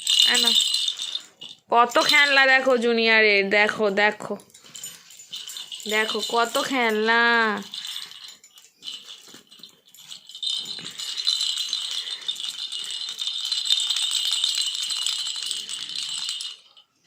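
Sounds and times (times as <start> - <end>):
baby rattle shaken fast: 0.0 - 2.8, 4.4 - 16.8.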